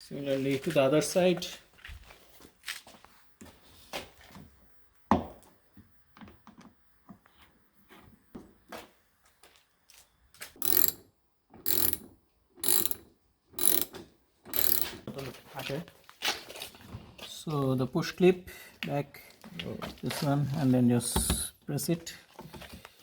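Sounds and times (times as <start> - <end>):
hand ratchet strokes: 10.6 - 11.0, 11.7 - 15.1.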